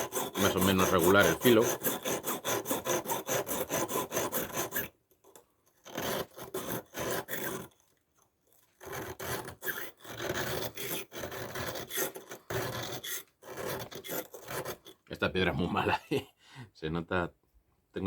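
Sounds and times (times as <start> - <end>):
knife rasping on sharpening stone: 0.0 - 4.9, 8.9 - 15.0.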